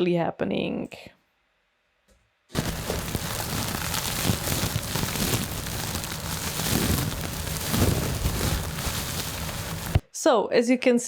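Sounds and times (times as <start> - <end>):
fingers rustling on microphone wind cover: 2.6 - 10.0.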